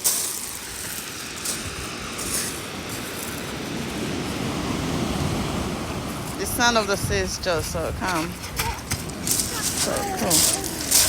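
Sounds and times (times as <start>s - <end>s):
sea waves washing up beach: 0.0s - 11.0s.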